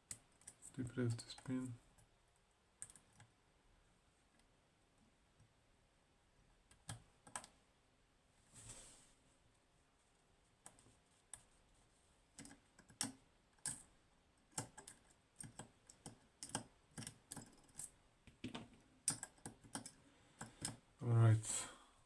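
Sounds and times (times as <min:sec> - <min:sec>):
faint metallic lock picking clicks: 0:14.5 - 0:17.9, 0:19.0 - 0:20.8.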